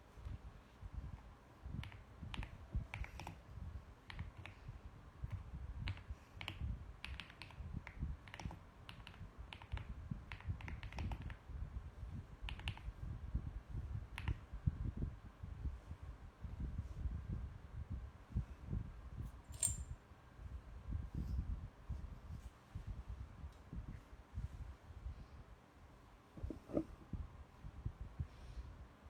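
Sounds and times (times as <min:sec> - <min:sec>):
mechanical keyboard typing: 0:05.8 - 0:07.6, 0:08.2 - 0:11.4.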